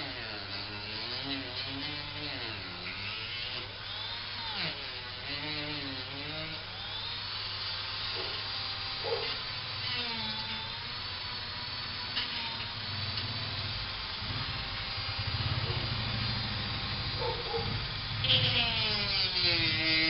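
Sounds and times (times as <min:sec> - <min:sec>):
electric power tool motor: 0:00.0 - 0:20.0.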